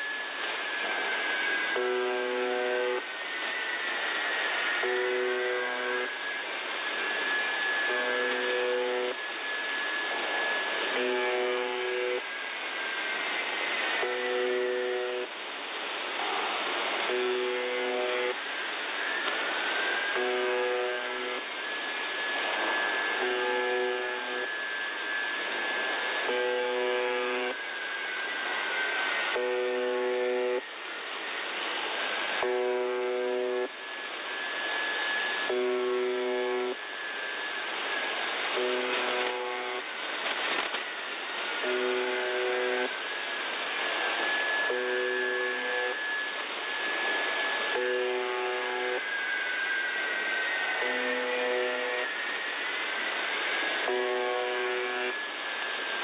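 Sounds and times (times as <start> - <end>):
radio static: 16.1 - 18.4, 35.5 - 36.8, 38.4 - 43.0
short radio buzz: 32.4 - 33.8, 38.5 - 43.0.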